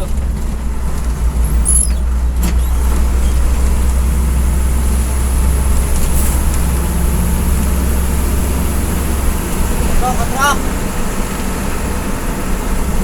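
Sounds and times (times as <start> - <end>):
coach engine and road drone: 0.0 - 13.0.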